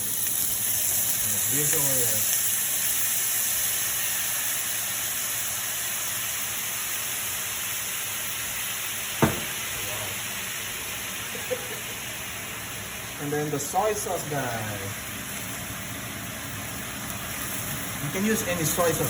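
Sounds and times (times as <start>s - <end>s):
chicken sizzling in oil: 0.0s - 19.0s
sharp knock: 9.2s - 9.7s.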